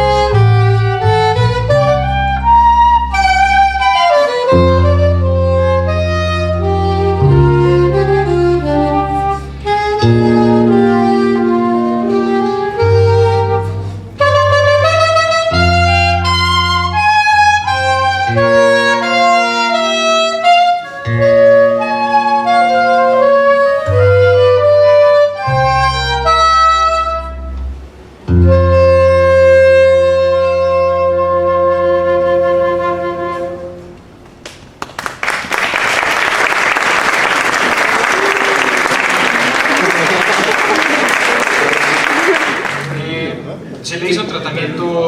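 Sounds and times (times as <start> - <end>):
instrumental ensemble playing: 0.0 - 34.8, 36.0 - 45.0
audience applause: 34.4 - 43.2.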